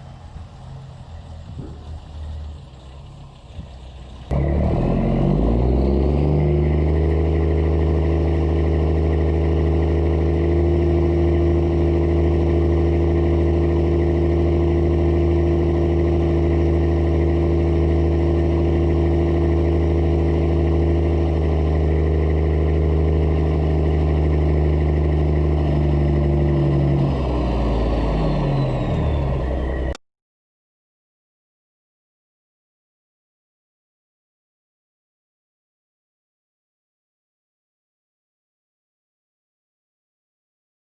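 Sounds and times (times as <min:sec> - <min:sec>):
truck diesel engine: 0:00.0 - 0:30.0.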